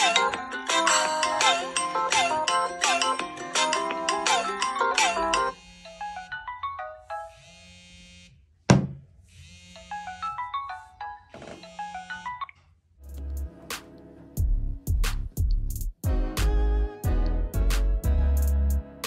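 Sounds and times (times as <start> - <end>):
phone ringtone melody: 0.0 - 7.8, 9.7 - 12.5.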